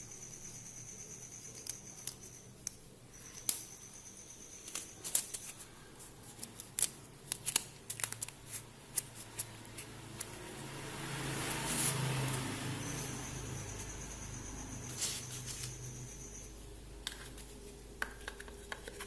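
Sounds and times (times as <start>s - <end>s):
faint high whine: 0.0s - 6.3s, 9.9s - 18.0s.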